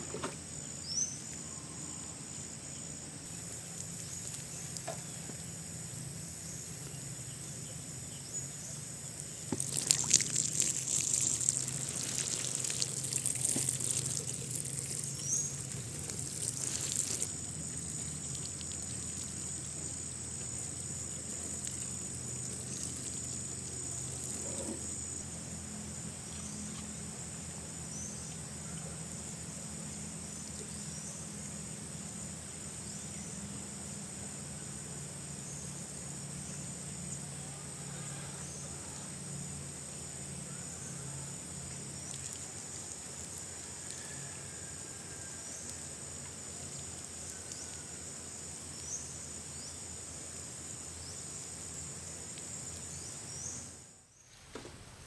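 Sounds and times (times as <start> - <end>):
water pouring and splashing: 3.4 - 5.0, 9.1 - 25.2, 41.9 - 44.1.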